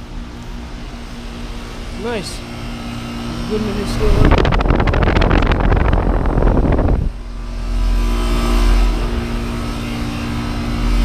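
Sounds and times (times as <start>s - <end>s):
compressor hum with fan noise: 0.0s - 11.0s
wind buffeting microphone: 3.3s - 9.4s.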